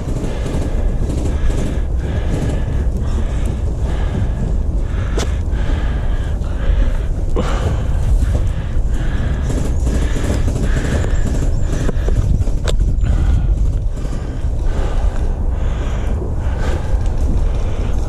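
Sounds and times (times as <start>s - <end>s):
heavy rumble on microphone: 0.0s - 18.0s
walking footsteps: 0.0s - 18.0s
sharp clicks: 8.2s - 15.3s.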